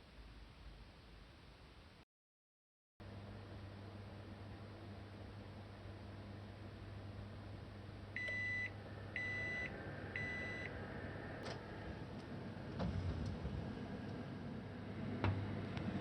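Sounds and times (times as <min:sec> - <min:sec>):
oven beeping: 0:08.2 - 0:10.8.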